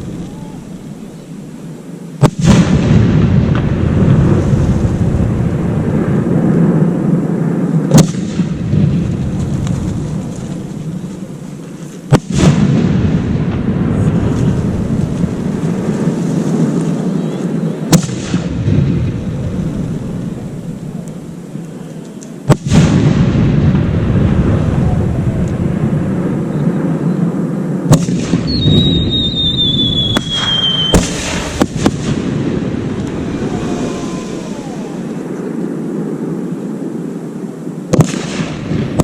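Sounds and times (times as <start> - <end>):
long rolling rumble: 2.6 - 27.9, 28.7 - 37.5
fireworks shells bursting: 28.0 - 32.2.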